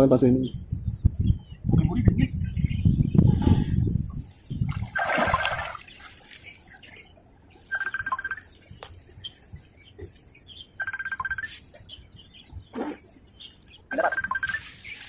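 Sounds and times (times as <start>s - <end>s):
bird trilling call: 7.7s - 8.6s, 10.6s - 11.6s, 12.2s - 15.0s.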